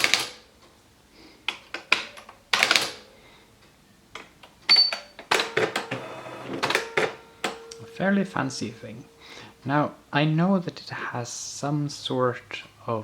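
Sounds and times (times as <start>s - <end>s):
typewriter key strikes: 0.0s - 0.4s, 6.6s - 7.9s
typewriter motor humming: 5.3s - 7.8s.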